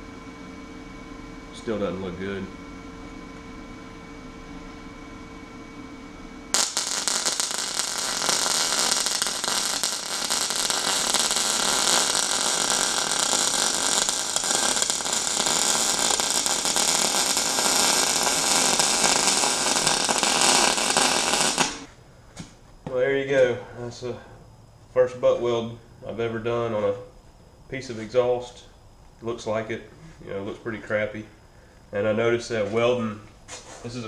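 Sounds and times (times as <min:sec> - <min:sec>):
welding arc crackling: 0:06.5 - 0:21.9.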